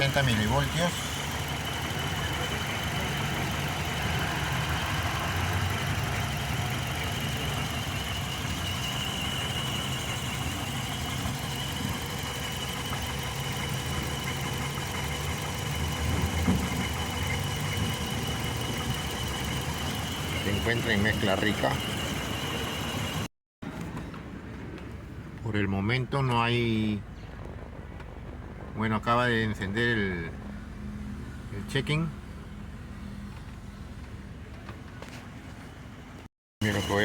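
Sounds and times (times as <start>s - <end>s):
car engine idling: 0.0s - 23.3s, 32.2s - 37.0s
high-pitched whine: 0.0s - 23.3s.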